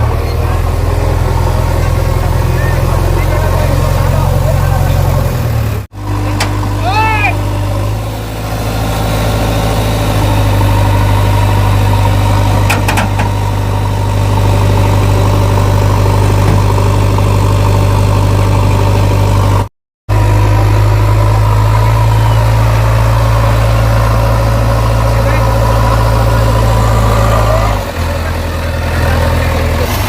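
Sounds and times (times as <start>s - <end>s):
diesel engine idling: 0.0s - 30.0s
sharp knocks: 12.6s - 13.4s.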